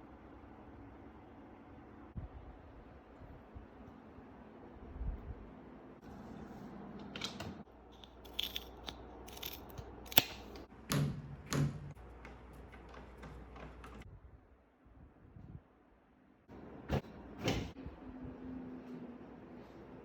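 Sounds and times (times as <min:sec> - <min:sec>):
clicks and knocks on wooden chair: 0:10.9 - 0:14.0.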